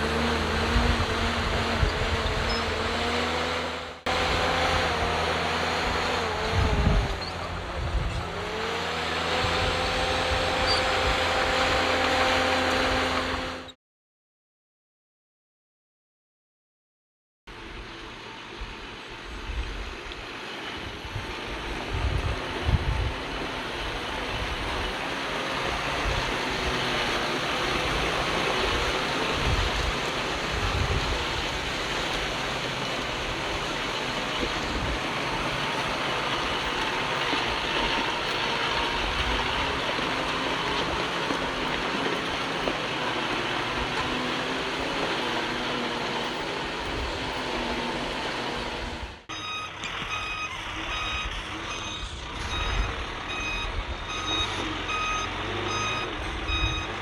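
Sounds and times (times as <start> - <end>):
diesel engine running: 0.0 - 13.8, 17.5 - 57.0
low gusty rumbles: 5.8 - 8.5
reversing alarm beeping: 49.3 - 57.0.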